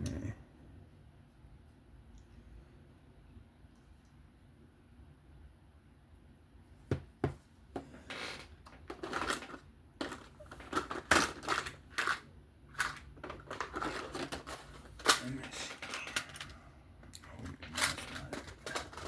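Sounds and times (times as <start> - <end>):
small parts clicking and clattering: 8.1 - 19.0.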